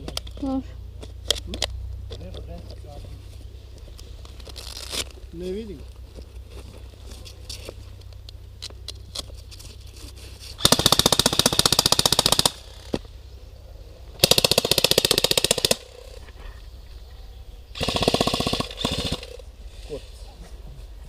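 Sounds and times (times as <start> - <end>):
airsoft rifle firing bursts: 10.6 - 12.8, 14.2 - 15.9, 17.8 - 19.4.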